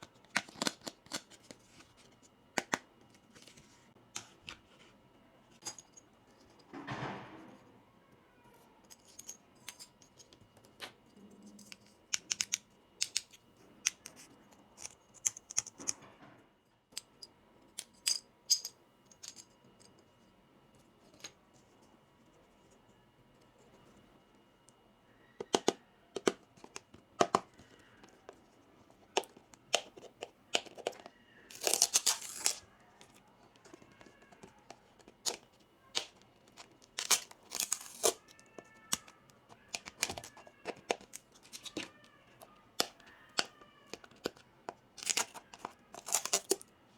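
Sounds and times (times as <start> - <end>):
plastic toy pieces clicking: 11.7 - 14.2, 33.6 - 42.0, 45.0 - 46.6
packaging tearing and crinkling: 31.5 - 32.6, 35.2 - 38.2, 45.0 - 46.6.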